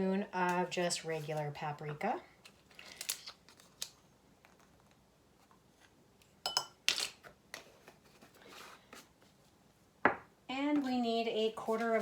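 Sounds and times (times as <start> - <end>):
metal spoon clinking kitchenware: 6.5 - 7.1.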